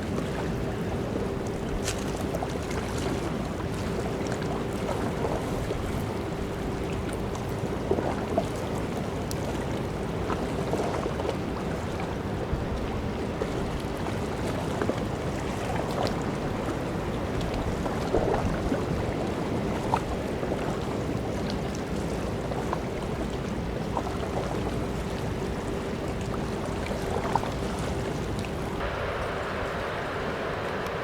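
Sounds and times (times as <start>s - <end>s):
faint steady hum: 0.0s - 31.0s
river water rushing: 28.4s - 31.0s.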